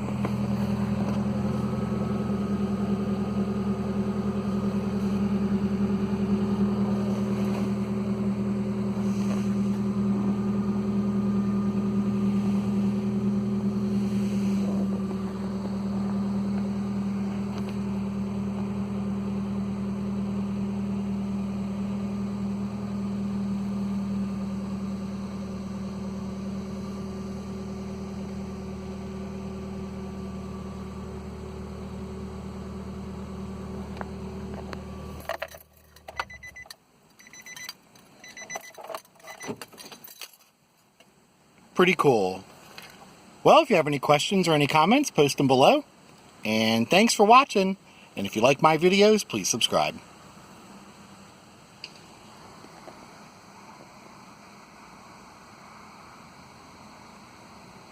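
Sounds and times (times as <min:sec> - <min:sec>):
loud exhaust drone: 0:00.0 - 0:35.2, 0:49.8 - 0:57.9
car engine idling: 0:00.0 - 0:37.0, 0:41.2 - 0:57.9.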